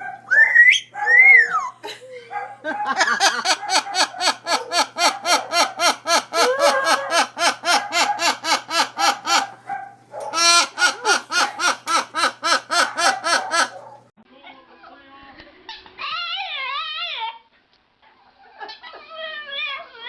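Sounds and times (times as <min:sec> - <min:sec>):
rapid laugh-like calls: 0:02.6 - 0:09.6, 0:10.3 - 0:13.8.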